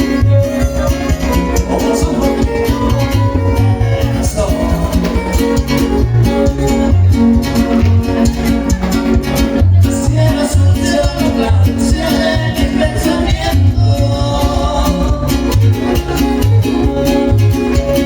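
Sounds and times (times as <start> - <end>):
latin american guitar music: 0.0 - 18.0
regular bass beat: 0.0 - 18.0.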